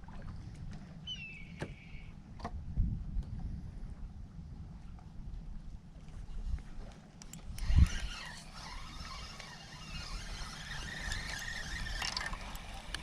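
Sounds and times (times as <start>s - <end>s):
electric trolling motor whirring: 7.2s - 13.0s.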